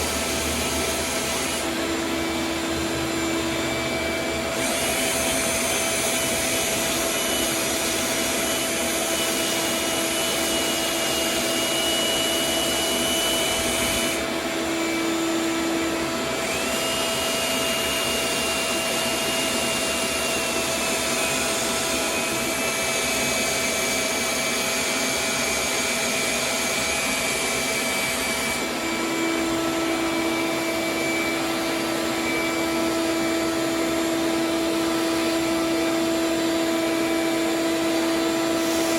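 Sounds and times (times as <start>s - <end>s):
vacuum humming whine: 0.0s - 38.9s.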